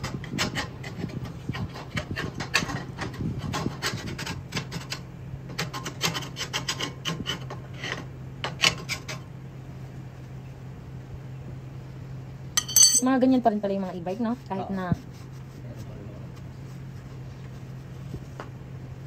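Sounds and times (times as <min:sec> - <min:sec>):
metal filing scrapes: 0:05.6 - 0:09.2
low hum: 0:09.5 - 0:13.5.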